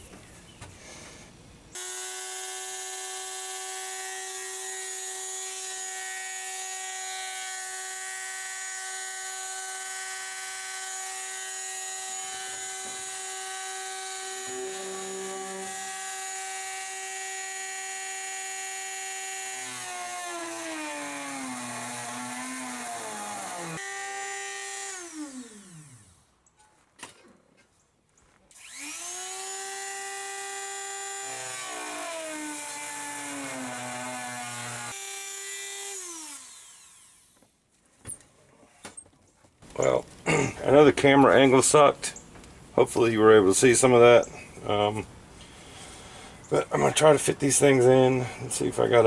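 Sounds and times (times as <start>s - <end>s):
rotary tool whining: 1.8s - 26.3s, 28.5s - 37.5s.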